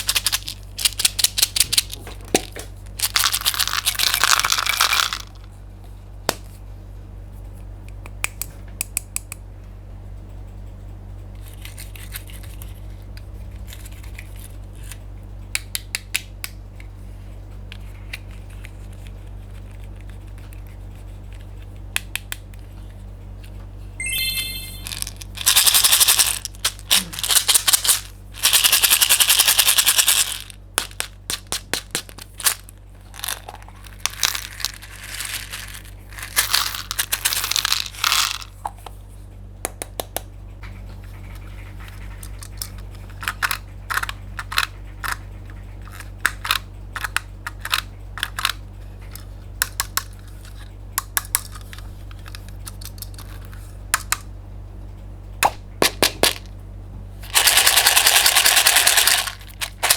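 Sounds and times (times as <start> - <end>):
candies clattering into plastic tub: 0.0 - 5.4, 24.8 - 38.5, 55.8 - 56.5, 57.2 - 59.9
steady low hum: 0.0 - 59.9.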